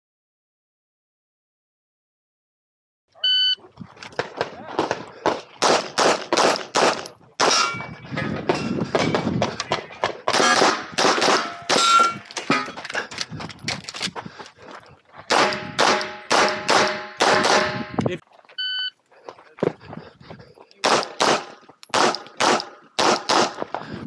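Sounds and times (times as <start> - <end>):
rapid pistol shots: 4.2 - 7.7, 9.0 - 12.2, 15.3 - 17.8, 20.8 - 23.6
steel targets ringing: 7.5 - 7.9, 11.4 - 12.8.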